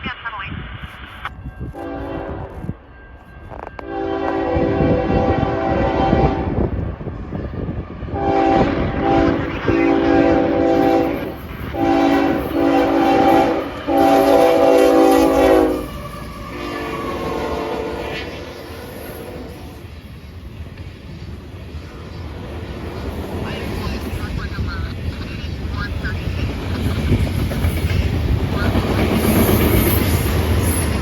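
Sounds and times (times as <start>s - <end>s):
passing train rumble: 1.1s - 31.0s
locomotive air horn blasts: 1.8s - 2.6s, 3.8s - 6.6s, 8.2s - 19.8s.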